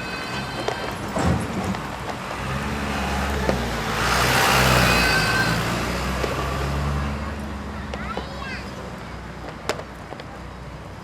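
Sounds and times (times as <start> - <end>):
broad rush of noise: 0.0 - 11.0.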